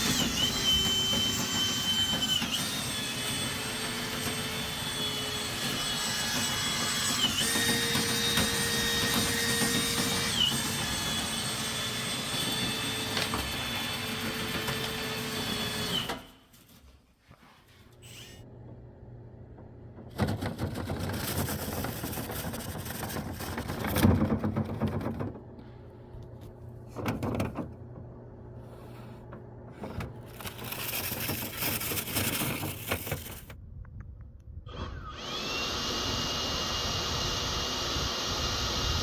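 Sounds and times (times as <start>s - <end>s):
blower with high whine: 0.0s - 16.3s, 34.7s - 39.0s
brush rattling inside vent duct: 20.0s - 25.8s, 26.8s - 33.5s.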